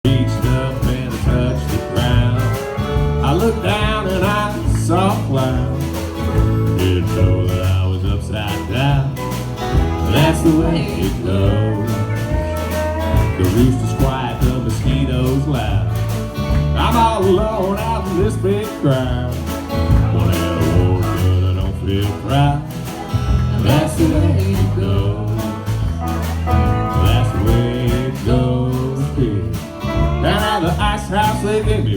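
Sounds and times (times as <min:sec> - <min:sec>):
bass: 0:00.0 - 0:31.9
strummed and plucked guitar: 0:00.0 - 0:31.9
drum beat: 0:00.1 - 0:31.9
wavering lead melody: 0:09.2 - 0:18.6.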